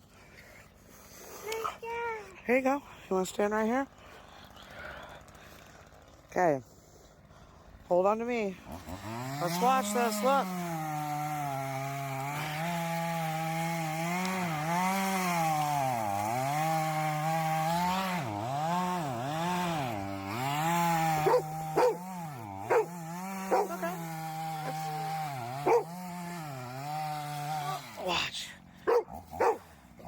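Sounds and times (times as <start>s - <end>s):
chainsaw cutting a tree: 0.0s - 30.0s
dog barking: 21.2s - 22.0s, 22.7s - 22.9s, 23.5s - 23.8s, 25.6s - 25.9s, 28.9s - 29.6s.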